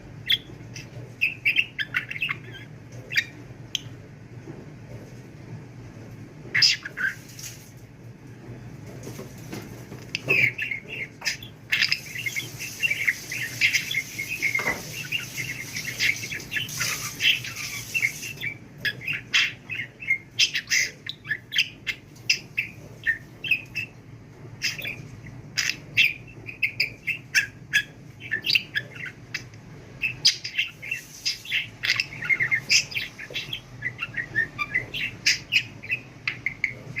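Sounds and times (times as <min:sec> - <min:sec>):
budgerigar chattering: 0:00.2 - 0:03.9, 0:10.2 - 0:23.9, 0:24.6 - 0:25.0, 0:25.6 - 0:37.0.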